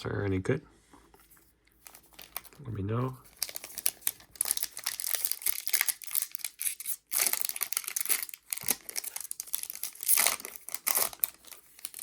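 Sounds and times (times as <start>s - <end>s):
foil wrapper crinkling: 1.8s - 2.6s, 3.2s - 12.0s.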